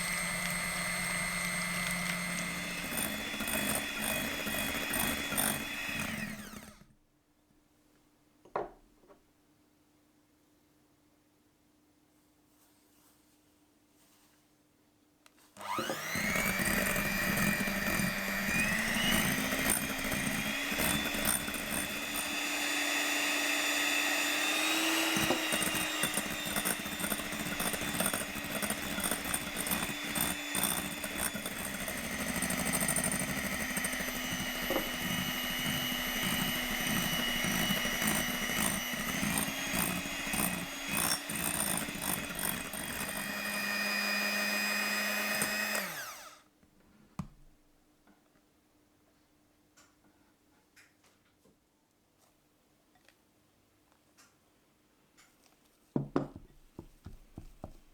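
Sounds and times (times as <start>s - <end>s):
electric hand mixer running: 0.0s - 6.8s, 15.6s - 46.4s.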